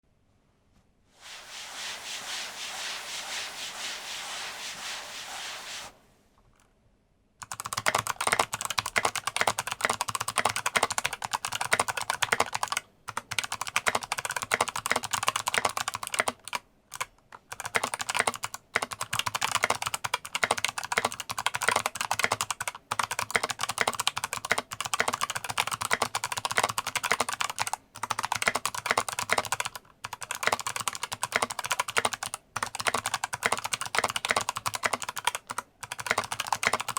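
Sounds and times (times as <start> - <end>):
steady rushing noise: 1.2 - 6.1
clicky keyboard typing: 7.4 - 36.9.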